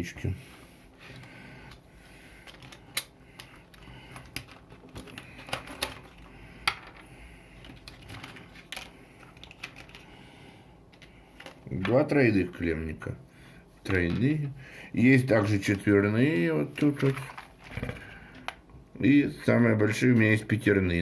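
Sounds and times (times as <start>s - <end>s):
plastic connectors clicking: 2.4s - 7.0s.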